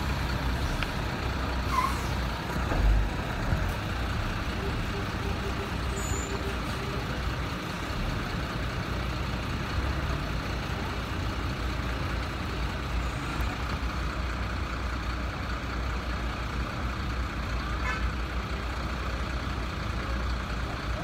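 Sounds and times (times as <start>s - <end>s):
diesel truck engines rumbling: 0.0s - 21.0s.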